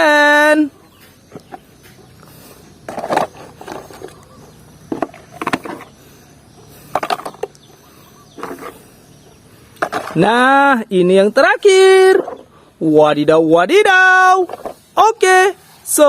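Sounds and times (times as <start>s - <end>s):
plastic toys clattering together: 2.9s - 4.2s, 4.9s - 5.9s, 6.9s - 7.6s, 9.8s - 10.2s.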